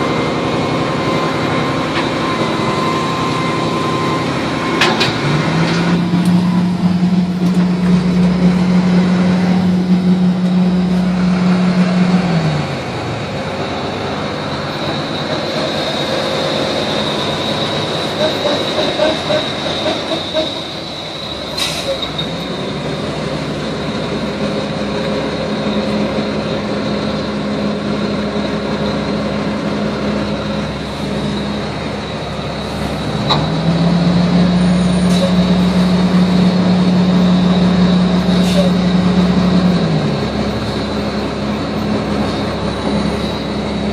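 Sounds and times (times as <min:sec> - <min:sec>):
steady high whine: 0:00.0 - 0:21.6
vehicle motor humming: 0:00.0 - 0:21.7.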